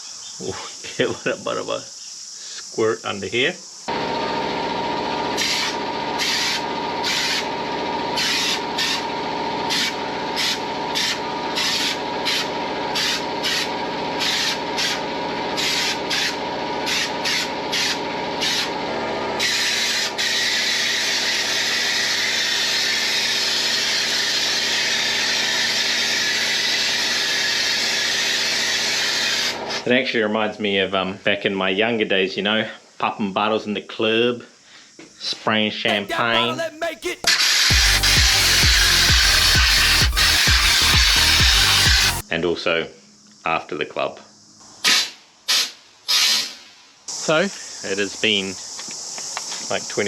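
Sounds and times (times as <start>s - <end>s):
steady hum: 35.9s - 42.2s
hissing spray squirts: 37.2s - 42.2s, 44.8s - 47.2s.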